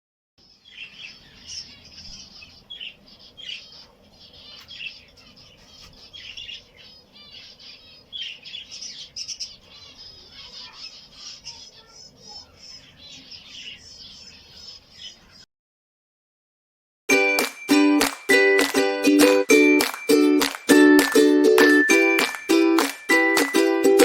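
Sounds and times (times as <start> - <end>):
cage birds chirping: 0.4 - 15.5.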